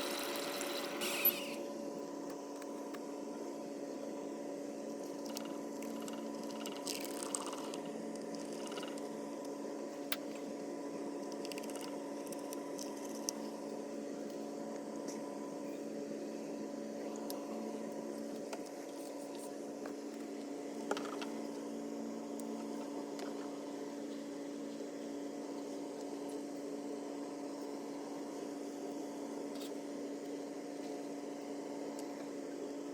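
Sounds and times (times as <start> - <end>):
electric water pump humming: 0.0 - 2.7.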